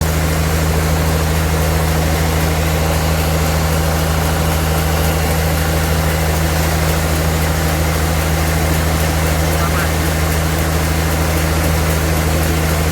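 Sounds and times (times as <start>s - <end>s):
machinery engine drone: 0.0s - 12.9s.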